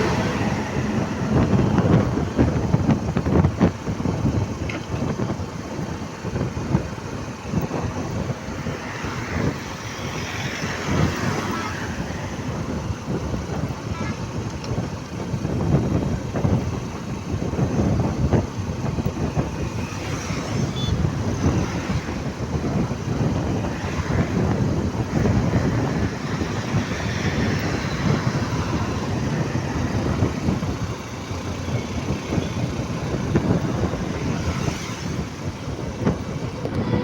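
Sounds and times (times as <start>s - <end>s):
vehicles on a road: 0.0s - 37.0s
wind buffeting microphone: 0.0s - 37.0s.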